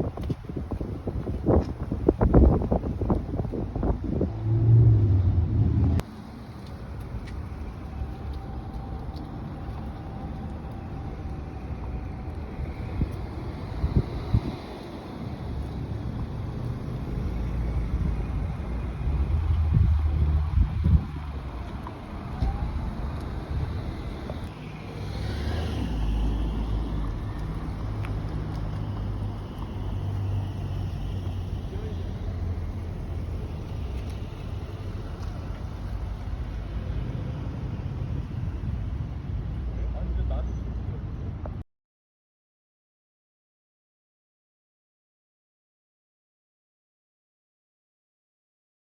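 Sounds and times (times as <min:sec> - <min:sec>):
car driving rumble: 0:00.0 - 0:41.6
road noise: 0:00.0 - 0:41.6
loud low hum: 0:04.1 - 0:06.0.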